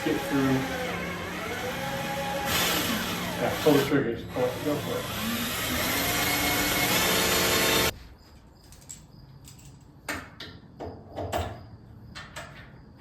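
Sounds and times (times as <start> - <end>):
power drill boring through wood: 0.0 - 7.9.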